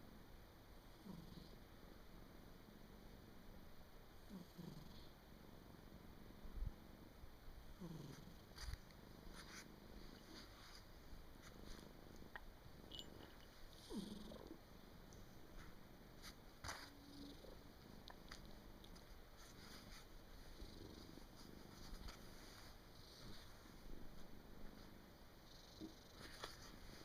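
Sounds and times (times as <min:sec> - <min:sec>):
cat snoring: 0:00.9 - 0:01.6, 0:04.2 - 0:05.6, 0:07.7 - 0:10.8, 0:13.7 - 0:14.6, 0:16.7 - 0:18.0, 0:19.4 - 0:23.5, 0:25.4 - 0:27.0.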